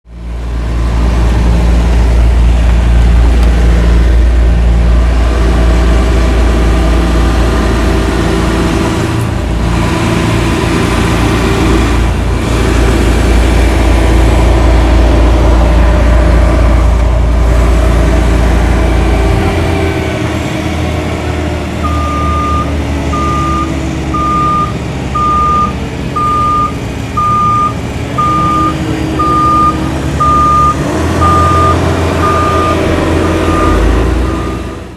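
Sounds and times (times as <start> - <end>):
machine engine deep rumble: 0.1 - 34.9
reversing alarm beeping: 21.8 - 34.8.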